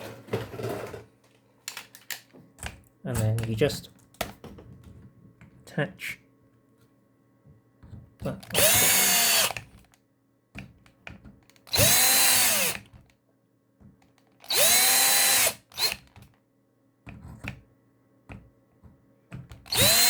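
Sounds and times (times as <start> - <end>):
power driver spinning: 8.4 - 9.7, 11.6 - 13.0, 14.4 - 16.2, 19.6 - 20.0.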